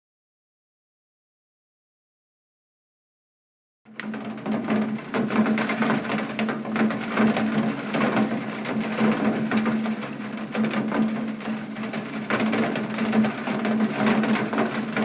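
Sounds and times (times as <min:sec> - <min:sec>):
rain pattering: 0:04.0 - 0:15.0.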